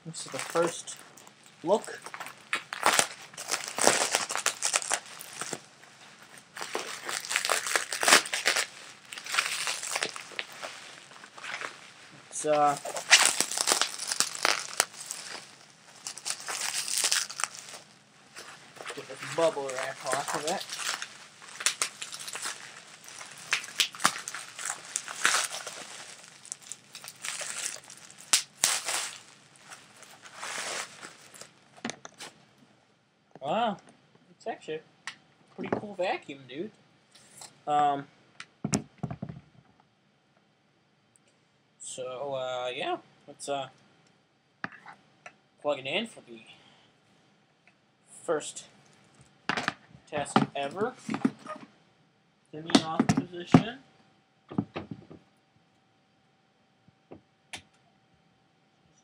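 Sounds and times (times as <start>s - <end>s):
packing material crinkling: 0.2s - 31.6s.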